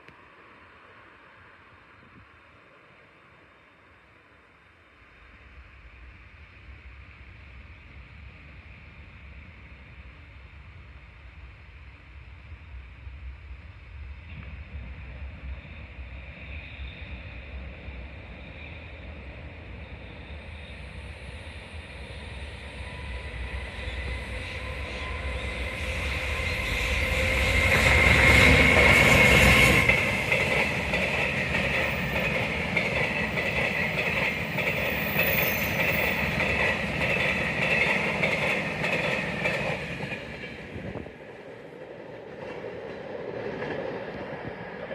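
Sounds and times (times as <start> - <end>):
electric locomotive passing: 0.0 - 44.9
train wagons rolling past: 12.4 - 44.9.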